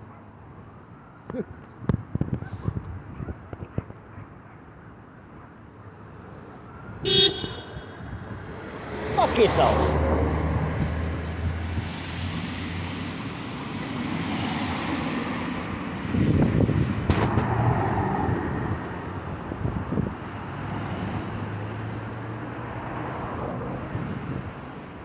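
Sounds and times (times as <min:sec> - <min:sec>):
vehicle passing close by: 0:07.1 - 0:24.7.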